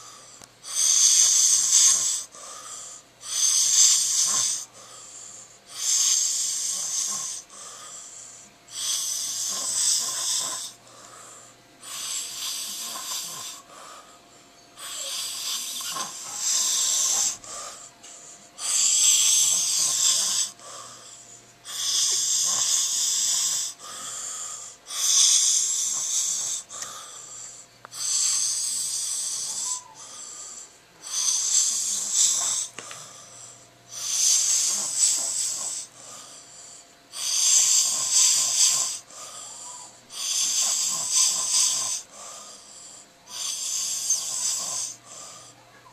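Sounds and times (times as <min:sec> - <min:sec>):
man snoring: 0:00.0 - 0:14.2, 0:14.8 - 0:45.6.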